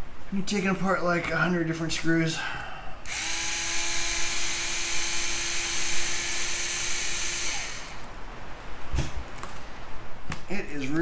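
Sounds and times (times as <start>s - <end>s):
cordless screwdriver running: 3.1s - 8.1s.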